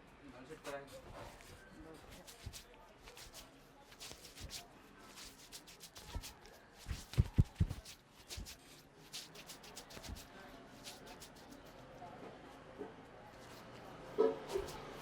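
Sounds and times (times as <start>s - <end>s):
hands rubbing hair and skin: 0.6s - 11.8s, 14.4s - 15.0s.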